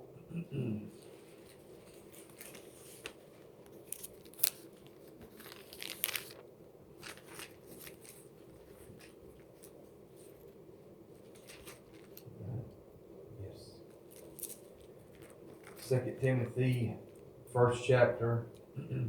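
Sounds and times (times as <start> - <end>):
faint room hum: 0.0 - 19.0
thin pages turning: 1.0 - 12.3, 13.9 - 16.9.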